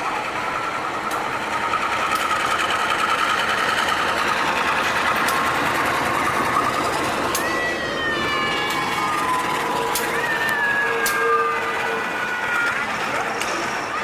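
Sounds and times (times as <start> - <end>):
train clattering: 0.0 - 14.0
high squealing tone: 5.8 - 14.0
wavering high tone: 6.0 - 13.3.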